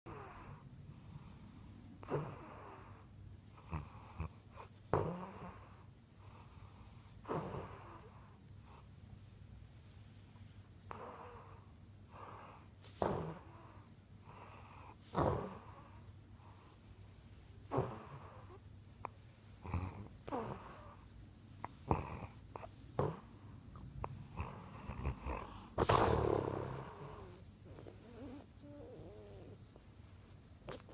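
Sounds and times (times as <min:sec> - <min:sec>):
dog breathing heavily: 0:09.9 - 0:30.9.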